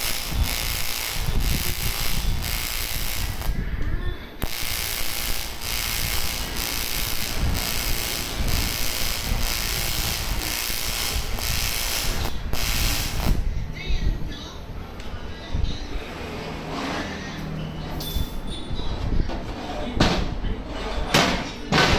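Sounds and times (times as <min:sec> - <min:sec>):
welding arc buzzing hiss: 0:00.0 - 0:13.6.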